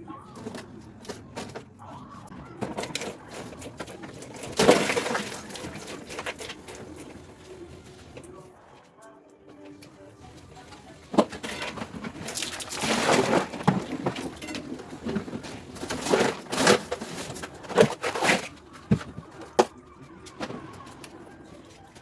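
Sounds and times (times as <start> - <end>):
scrubbing and rubbing: 0.4 - 8.4, 10.2 - 19.6.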